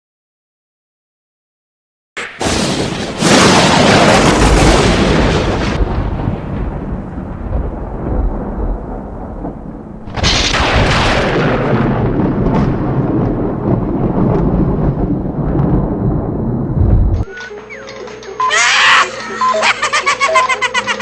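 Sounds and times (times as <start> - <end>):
rumbling boom: 2.4 - 17.3.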